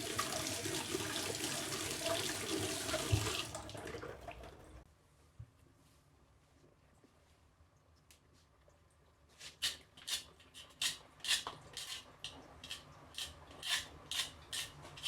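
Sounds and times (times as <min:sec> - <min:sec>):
tap water running into sink: 0:00.0 - 0:04.8.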